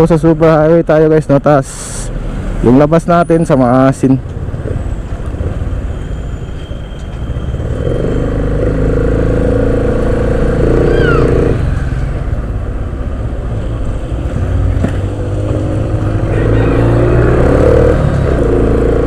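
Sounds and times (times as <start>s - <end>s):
wind and engine rumble: 0.0s - 19.0s.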